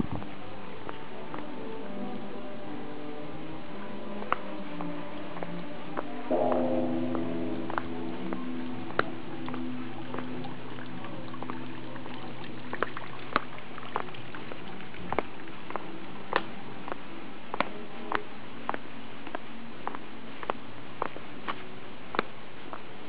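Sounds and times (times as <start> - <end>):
temple bell hum: 0.8 - 13.4
water dripping and trickling: 7.1 - 19.4.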